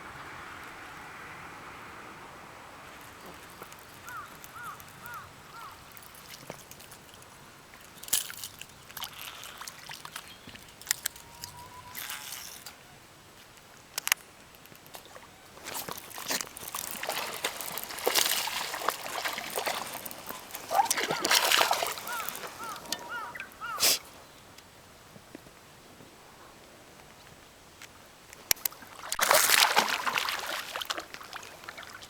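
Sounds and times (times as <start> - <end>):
water splashing and sloshing: 2.8 - 12.7, 14.0 - 24.0, 28.4 - 32.0.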